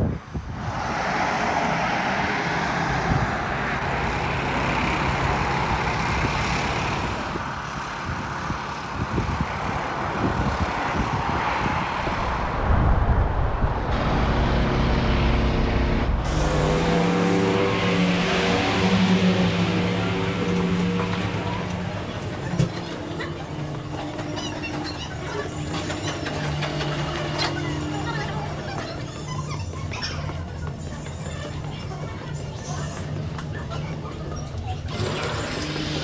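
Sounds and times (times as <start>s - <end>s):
motorway traffic rushing past: 0.0s - 36.0s
low engine rumble: 11.7s - 36.0s.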